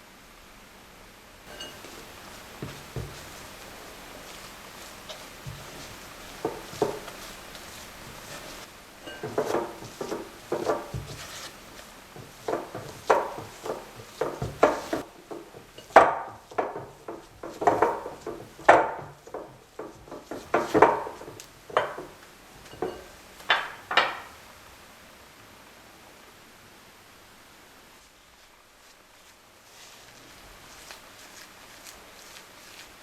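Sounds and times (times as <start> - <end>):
utensils knocking and scraping: 1.5 - 24.4.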